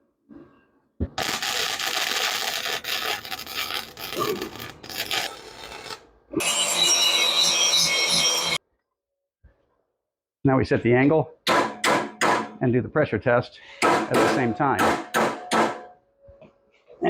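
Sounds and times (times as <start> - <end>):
welding arc crackling and sizzling: 1.2 - 6.0.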